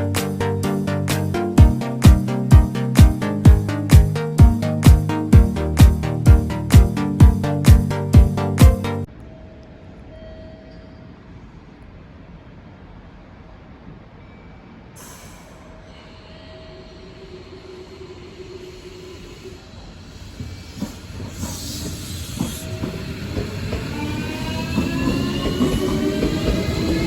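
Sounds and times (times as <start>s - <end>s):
train rumbling: 0.0s - 9.1s, 11.7s - 27.0s
train whine rising in pitch: 0.0s - 9.1s, 15.0s - 27.0s.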